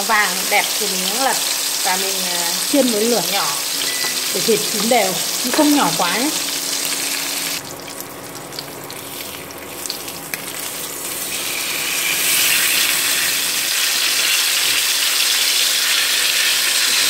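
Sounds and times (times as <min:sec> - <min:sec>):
pork frying in oil: 0:00.0 - 0:17.0.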